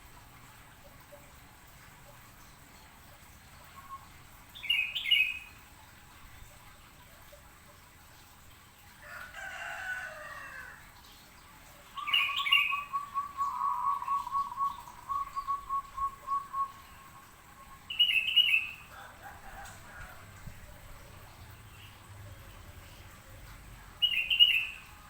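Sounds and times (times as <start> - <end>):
dove cooing: 12.0 - 21.3.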